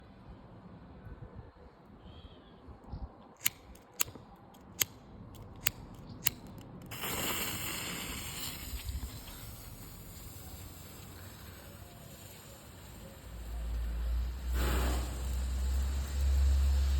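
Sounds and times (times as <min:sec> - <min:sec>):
sharp clicks: 0:03.3 - 0:07.0
smoke bomb hissing: 0:06.9 - 0:16.9.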